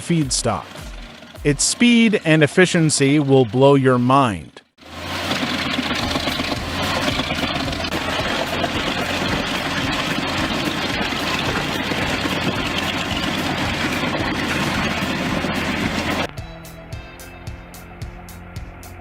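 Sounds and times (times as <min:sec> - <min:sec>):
heavy machine engine running: 0:00.0 - 0:03.6, 0:04.8 - 0:16.3.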